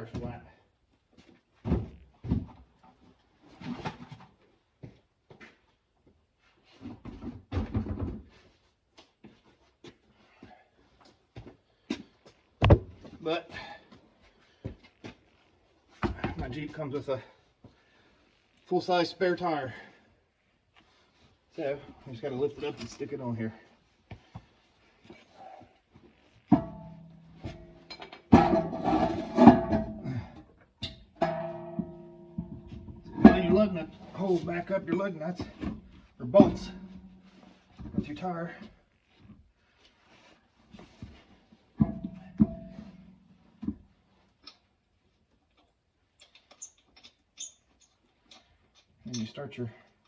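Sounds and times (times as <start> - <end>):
metal knocks with ringing: 26.5 - 30.0, 31.2 - 34.2, 36.4 - 37.5, 41.8 - 43.3
struck ringing notes: 31.2 - 34.2.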